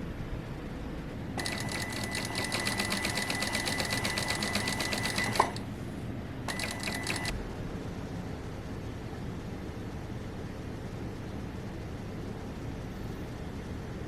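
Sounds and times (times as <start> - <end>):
sewing machine click: 1.4 - 5.7, 6.5 - 7.3
sewing machine stitching: 1.4 - 5.7, 6.5 - 7.3.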